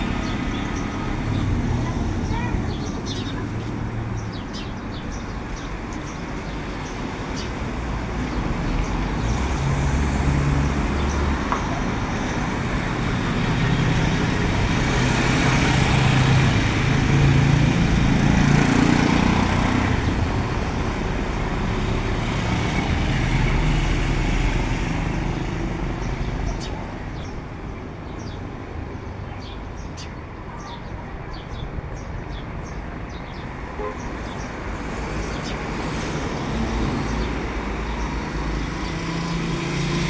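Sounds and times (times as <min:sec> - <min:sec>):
vehicle engine and tyre noise: 0:06.0 - 0:29.3, 0:32.8 - 0:40.0.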